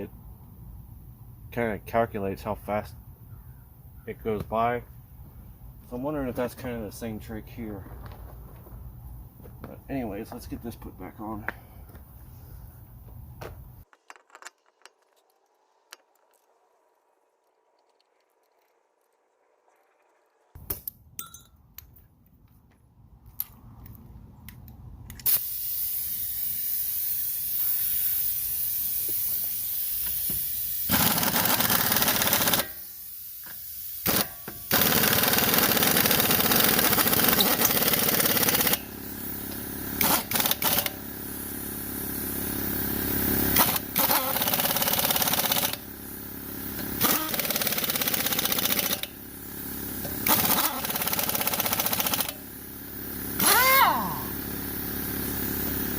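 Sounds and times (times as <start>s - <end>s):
impact wrench running: 27.2s - 55.9s.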